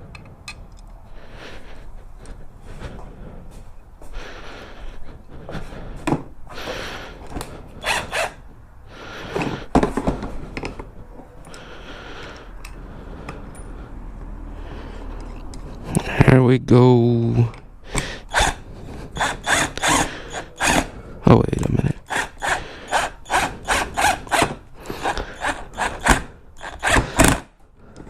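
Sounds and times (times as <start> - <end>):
tools clicking and knocking: 22.0 - 28.0.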